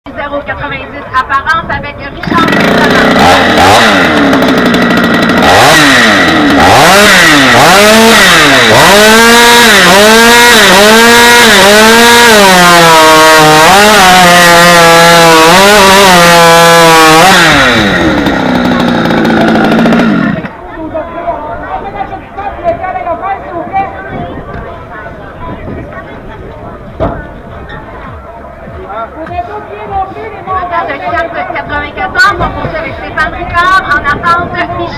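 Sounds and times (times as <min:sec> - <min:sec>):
chainsaw at full throttle: 0:02.2 - 0:20.6.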